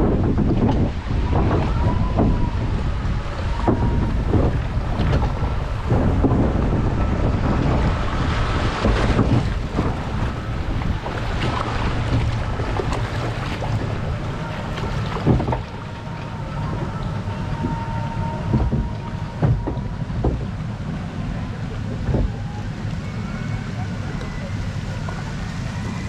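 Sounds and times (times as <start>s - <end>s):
water rushing and splashing: 0.0s - 26.0s
wind buffeting microphone: 0.0s - 26.0s
knocks: 15.1s - 15.8s, 17.6s - 20.6s.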